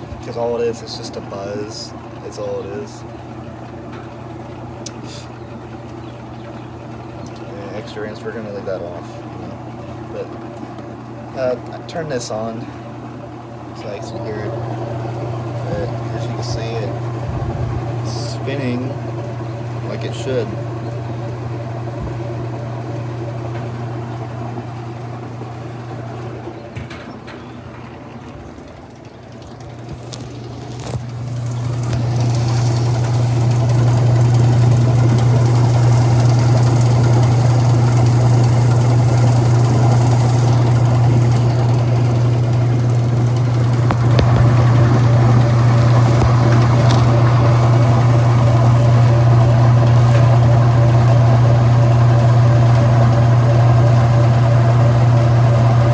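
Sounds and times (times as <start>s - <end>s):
washing machine spinning: 0.0s - 55.9s.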